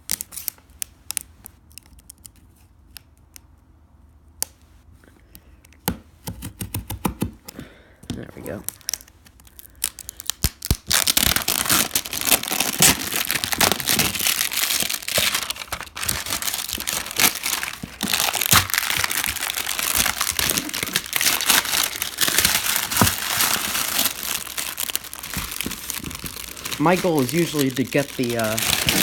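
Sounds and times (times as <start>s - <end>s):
shrink wrap crinkling: 8.2s - 29.0s.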